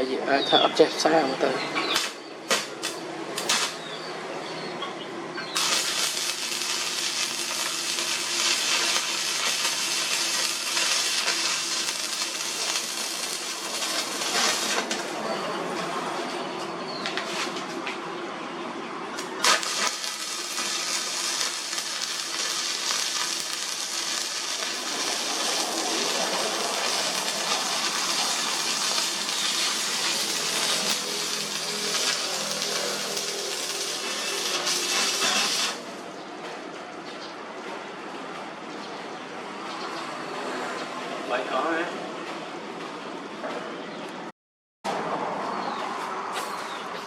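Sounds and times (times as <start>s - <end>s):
welding arc crackling and hissing: 1.8s - 3.8s, 5.6s - 15.2s, 19.2s - 36.0s.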